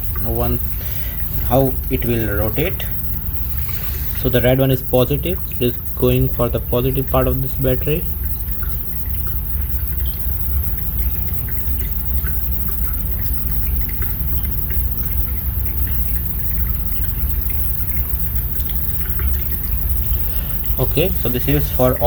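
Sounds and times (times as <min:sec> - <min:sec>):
small gear motor humming: 0:00.0 - 0:04.5.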